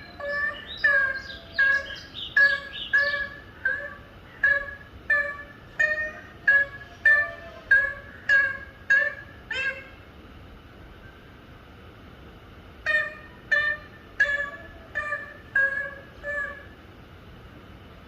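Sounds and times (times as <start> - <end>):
parrot calling: 0.0 - 10.0, 12.8 - 16.8.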